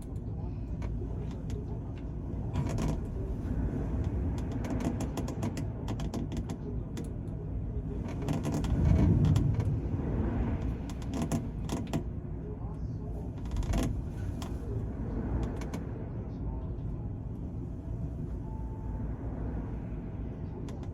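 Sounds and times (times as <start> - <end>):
ferry engine low rumble: 0.0 - 20.9
clicks and creaks: 2.5 - 3.2, 4.0 - 9.8, 10.6 - 12.1, 13.4 - 14.5, 15.4 - 15.9.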